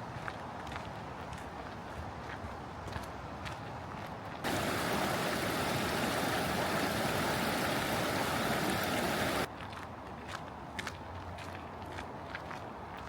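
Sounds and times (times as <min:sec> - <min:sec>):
faint footsteps on trail: 0:00.0 - 0:13.0
fast-flowing stream water: 0:04.4 - 0:09.5.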